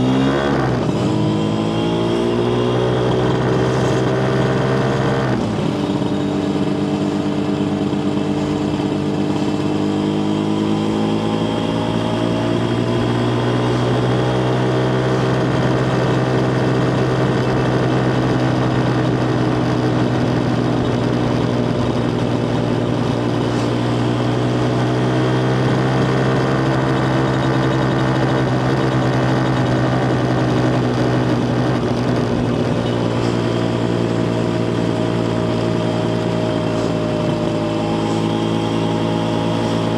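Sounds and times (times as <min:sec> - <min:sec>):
two-stroke motorcycle engine running: 0:00.0 - 0:39.9.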